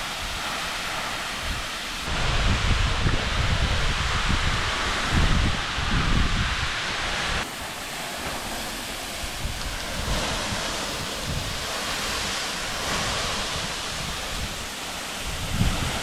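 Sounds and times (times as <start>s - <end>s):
waterfall rushing: 0.0s - 16.0s
wind buffeting microphone: 0.0s - 16.0s.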